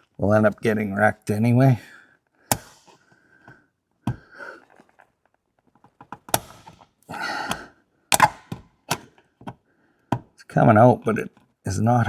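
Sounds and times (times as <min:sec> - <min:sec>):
tool knocking on plastic pin: 0:07.5 - 0:10.3.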